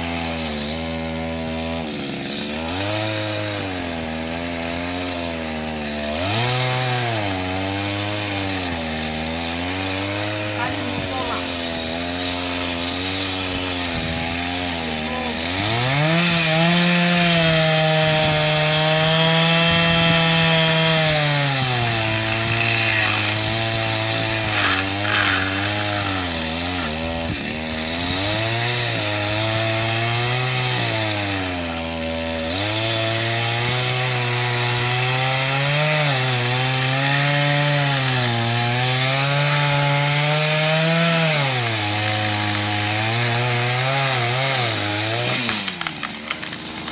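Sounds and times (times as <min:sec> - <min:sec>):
chainsaw cutting wood: 0:00.0 - 0:46.9.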